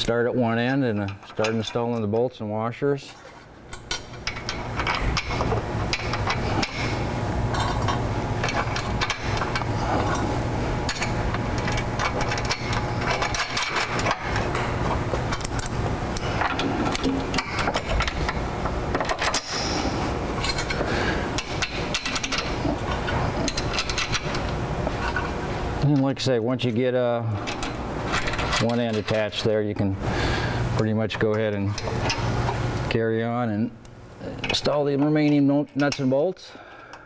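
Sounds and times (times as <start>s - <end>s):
steady low hum: 0.0s - 37.0s
metallic knocks and clanks: 3.2s - 25.4s.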